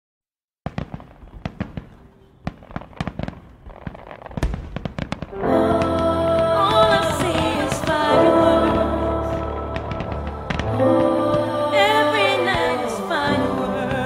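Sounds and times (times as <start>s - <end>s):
fireworks cracks and bangs: 0.6s - 14.0s.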